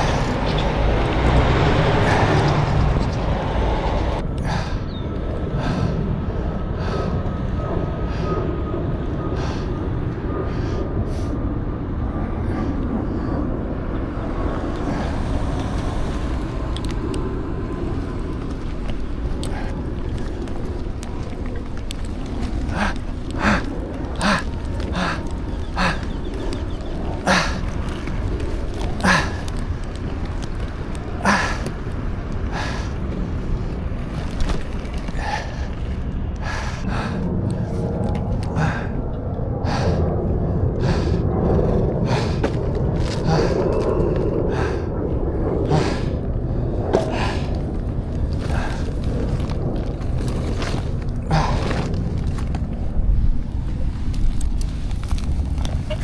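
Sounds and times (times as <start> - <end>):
person breathing hard: 0.0 - 56.0
wind rumbling on microphone: 0.0 - 56.0
skate wheels rolling over pavement: 14.0 - 38.5, 46.9 - 56.0.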